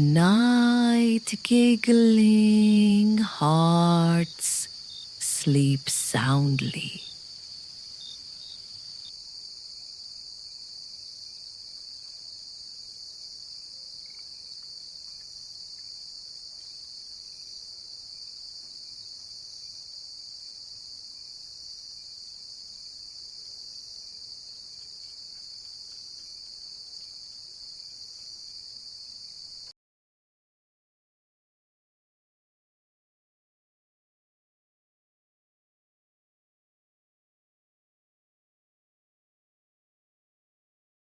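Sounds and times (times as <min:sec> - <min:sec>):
crickets chirping: 0:00.2 - 0:29.7.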